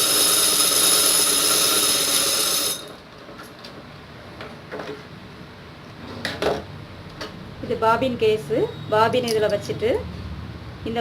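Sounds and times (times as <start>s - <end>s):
sewing machine whirring: 0.0s - 3.0s.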